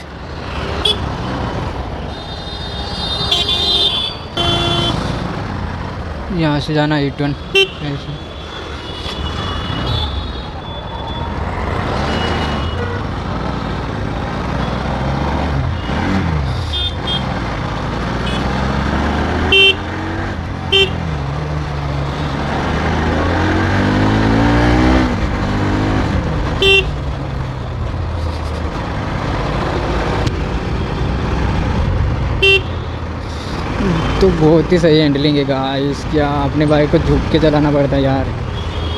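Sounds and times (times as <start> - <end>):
horn toots: 2.1 - 5.2, 19.4 - 20.0, 20.7 - 21.0, 26.6 - 27.0, 32.4 - 32.8.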